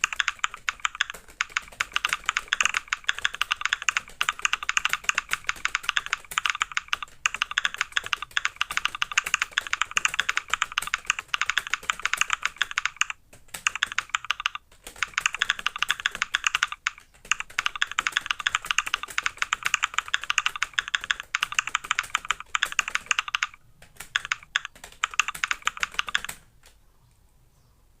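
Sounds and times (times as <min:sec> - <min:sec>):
fast typing on keyboard: 0:00.0 - 0:26.5.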